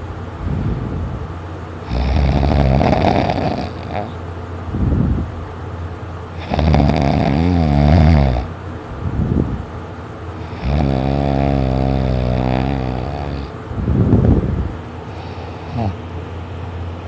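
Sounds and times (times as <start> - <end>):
person snoring heavily: 1.8 - 4.2, 6.4 - 8.5, 10.4 - 13.6, 15.1 - 16.0.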